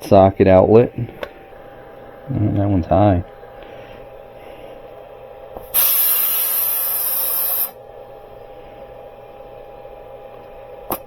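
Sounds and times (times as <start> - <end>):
air hissing from tire valve: 5.6 - 7.8.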